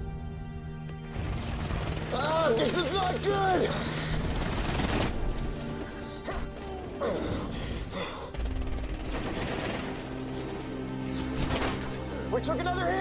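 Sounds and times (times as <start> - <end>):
dramatic orchestral score: 0.0 - 13.0.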